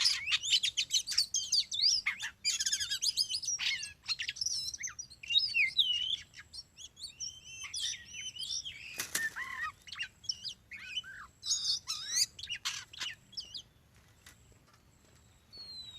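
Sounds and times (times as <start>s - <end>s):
magpie-robin singing: 0.0s - 13.8s, 15.2s - 15.9s.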